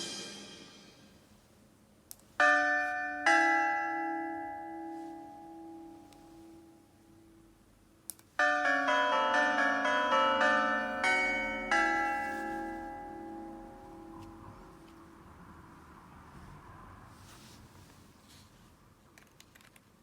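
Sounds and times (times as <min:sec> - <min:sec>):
church bells pealing: 0:02.4 - 0:06.8, 0:08.4 - 0:15.3
bell strikes ringing: 0:08.4 - 0:14.7.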